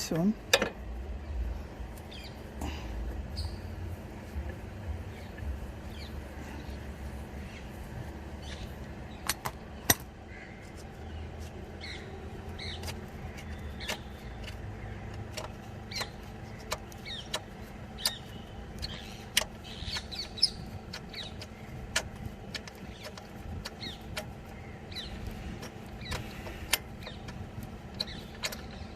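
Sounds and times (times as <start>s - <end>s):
hand tools clicking on metal: 12.5s - 28.9s.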